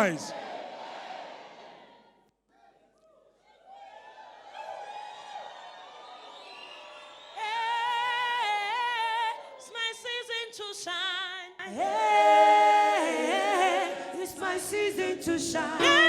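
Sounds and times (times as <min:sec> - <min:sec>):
voices singing unaccompanied: 0:11.6 - 0:16.0.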